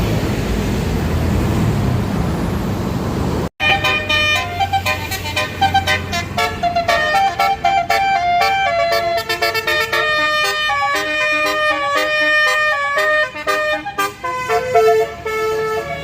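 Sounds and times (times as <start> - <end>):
bus engine: 0.0 - 16.0
road noise: 0.0 - 16.0
multi-tone bus horn tune: 3.6 - 16.0.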